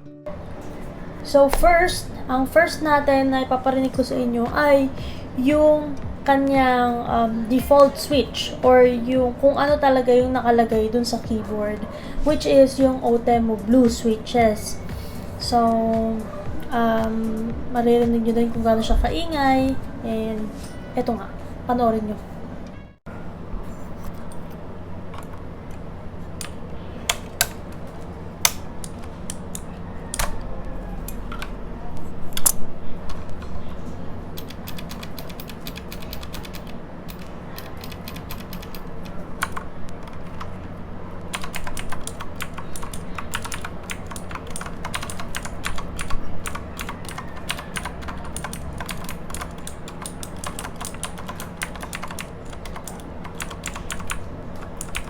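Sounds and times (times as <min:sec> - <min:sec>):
clicky mechanical keyboard typing: 0:34.4 - 0:40.5, 0:41.3 - 0:55.0.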